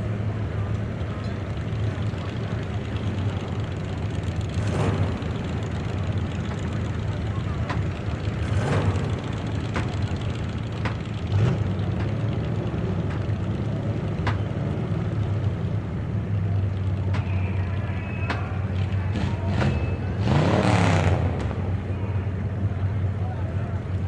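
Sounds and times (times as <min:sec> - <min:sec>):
race car engines running: 0:00.0 - 0:24.0
race car passing close: 0:16.5 - 0:22.0.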